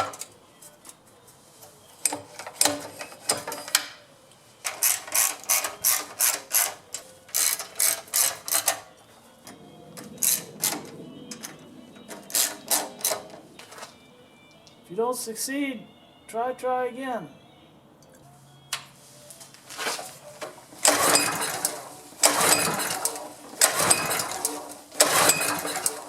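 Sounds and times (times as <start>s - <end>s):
ratchet wrench clicking: 4.7s - 8.8s.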